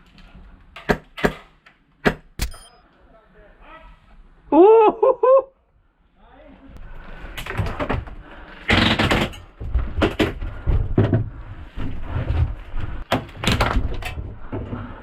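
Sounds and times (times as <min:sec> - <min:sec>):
knocks and thuds: 0:07.5 - 0:14.9.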